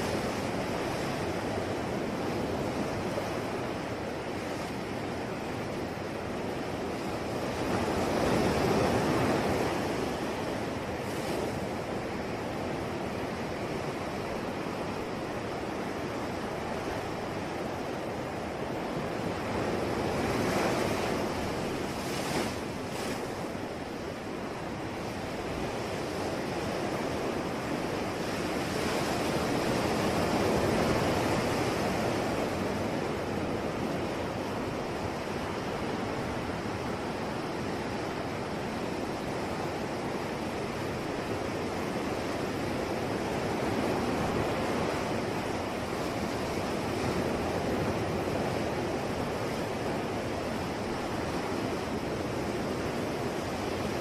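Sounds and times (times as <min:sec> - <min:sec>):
sea waves breaking on shore: 0:00.0 - 0:54.0.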